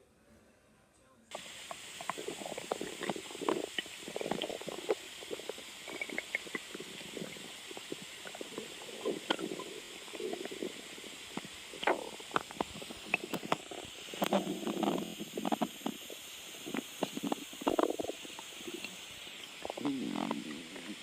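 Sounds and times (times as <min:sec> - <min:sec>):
faint steady hiss: 0:00.0 - 0:21.0
stomach growling: 0:01.3 - 0:21.0.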